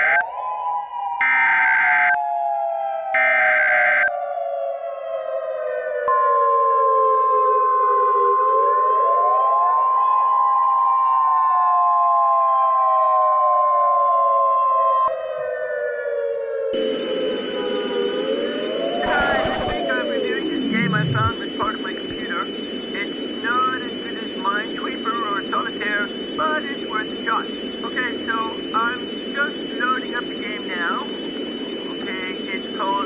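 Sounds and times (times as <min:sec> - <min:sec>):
wailing siren: 0:00.0 - 0:33.0
buzzing data bursts: 0:19.0 - 0:19.8, 0:20.6 - 0:24.4
steady alert tone: 0:20.6 - 0:21.4.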